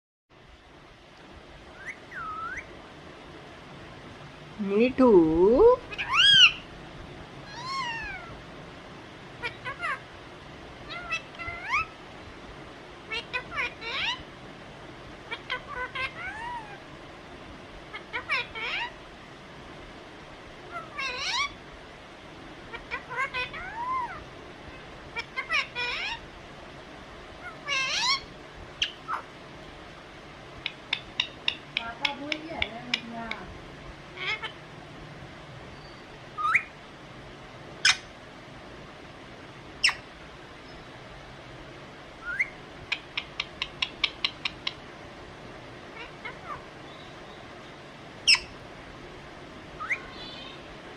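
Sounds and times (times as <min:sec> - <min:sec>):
parrot calling: 0:01.7 - 0:02.7, 0:05.4 - 0:06.8, 0:07.4 - 0:08.4, 0:09.3 - 0:10.1, 0:10.8 - 0:12.0, 0:13.0 - 0:14.3, 0:15.2 - 0:16.9, 0:17.8 - 0:19.0, 0:20.6 - 0:21.6, 0:22.6 - 0:26.3, 0:27.3 - 0:29.4, 0:30.6 - 0:33.4, 0:34.1 - 0:34.6, 0:35.8 - 0:36.8, 0:37.8 - 0:38.1, 0:39.8 - 0:40.1, 0:42.2 - 0:44.8, 0:45.9 - 0:47.5, 0:48.2 - 0:48.6, 0:49.7 - 0:50.8
parrot chirps and clicks: 0:30.6 - 0:33.5, 0:42.9 - 0:44.8.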